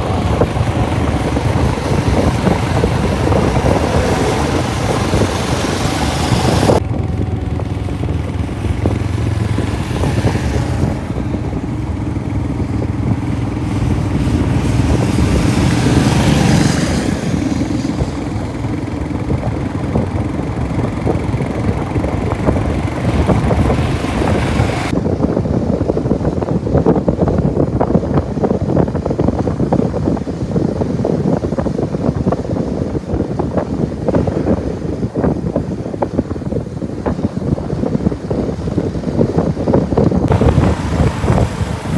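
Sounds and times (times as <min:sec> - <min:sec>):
motorcycle engine running: 0:00.0 - 0:25.0, 0:39.0 - 0:41.9.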